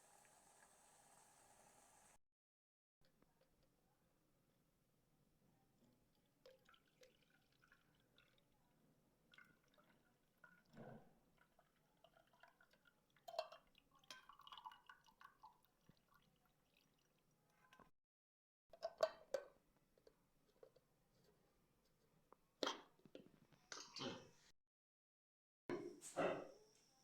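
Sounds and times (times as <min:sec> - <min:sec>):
water heating in a pot: 0:00.0 - 0:02.2.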